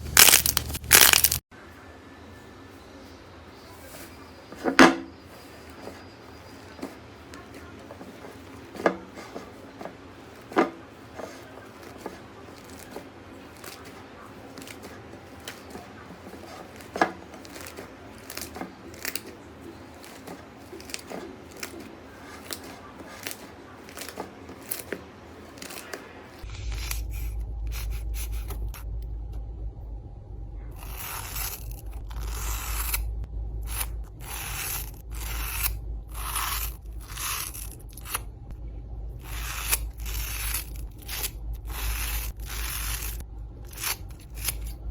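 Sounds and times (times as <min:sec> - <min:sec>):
crunchy bursts: 0:00.0 - 0:01.4
low hum: 0:25.0 - 0:44.9.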